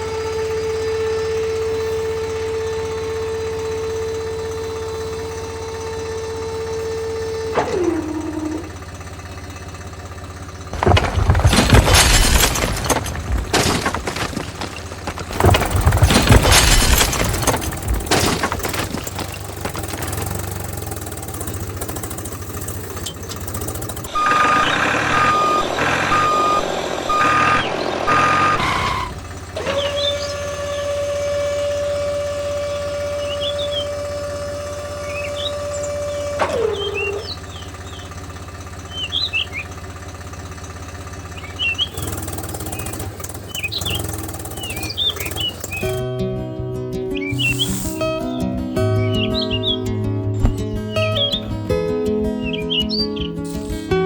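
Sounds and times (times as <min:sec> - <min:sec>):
soil tipping out: 0:00.1 - 0:46.1, 0:47.1 - 0:54.0
beeps: 0:24.1 - 0:29.1.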